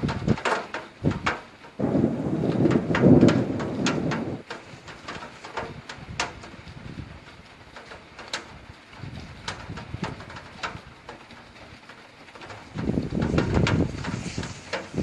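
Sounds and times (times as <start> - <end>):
raindrops ticking on hard surface: 0.0 - 15.0
low thunder rumble: 1.8 - 7.2, 12.7 - 15.0.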